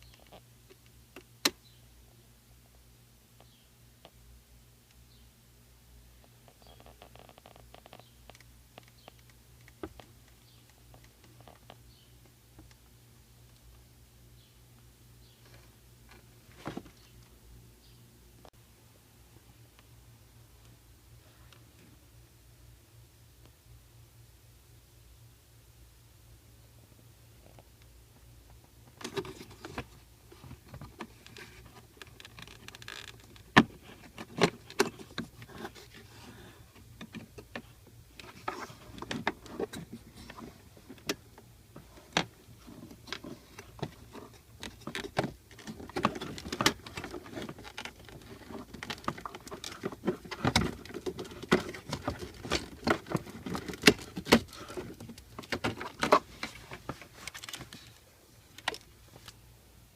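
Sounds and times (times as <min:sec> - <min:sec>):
hard objects clicking and rattling: 0:42.1 - 0:58.9.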